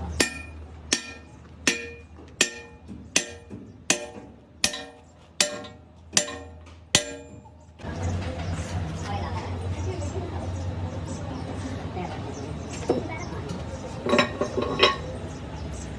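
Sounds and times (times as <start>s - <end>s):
hammer striking metal: 0.1s - 7.6s.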